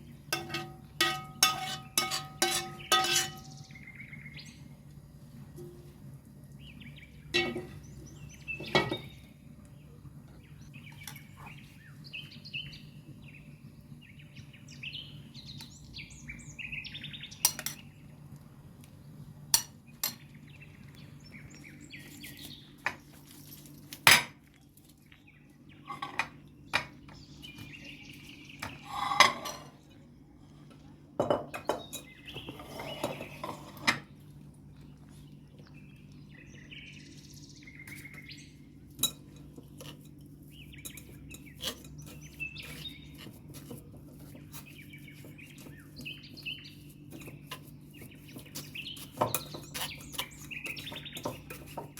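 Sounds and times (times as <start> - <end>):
utensils and dishes clinking: 0.3 - 3.6, 7.3 - 7.8, 17.4 - 17.9, 28.6 - 29.8, 31.2 - 34.1, 38.9 - 44.6, 48.4 - 51.9
soft scraping and rubbing: 28.8 - 29.8, 32.4 - 33.9.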